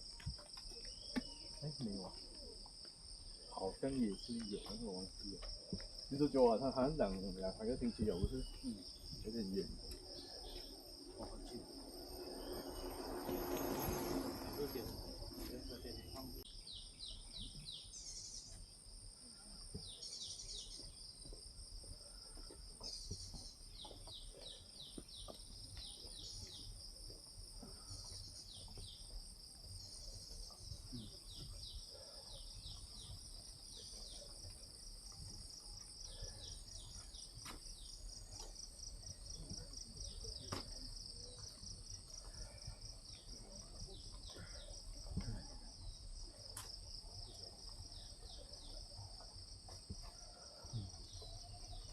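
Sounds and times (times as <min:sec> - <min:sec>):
insects trilling: 0:00.0 - 0:51.9.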